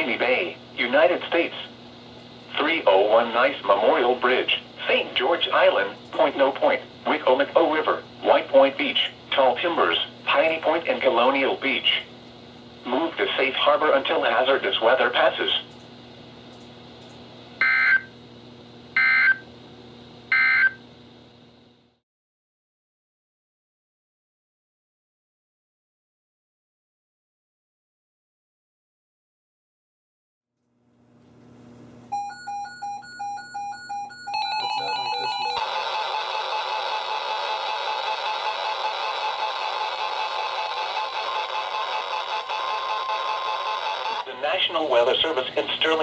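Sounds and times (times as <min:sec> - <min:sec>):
faint hiss and hum: 0:00.0 - 0:20.2, 0:44.2 - 0:46.0
higher alarm beeping: 0:17.6 - 0:18.1, 0:19.0 - 0:19.4, 0:20.3 - 0:20.8, 0:32.1 - 0:36.9
weather alert radio alarm beeping: 0:20.3 - 0:20.8, 0:32.2 - 0:39.8
data tone bursts: 0:33.8 - 0:36.8.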